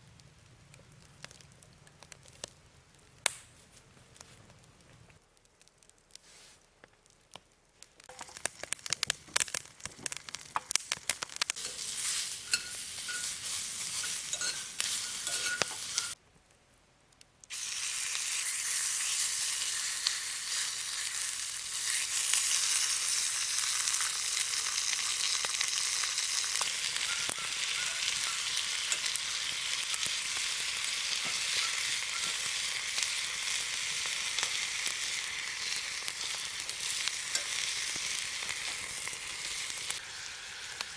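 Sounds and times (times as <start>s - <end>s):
meat sizzling in hot fat: 8.0s - 16.2s, 17.5s - 40.9s.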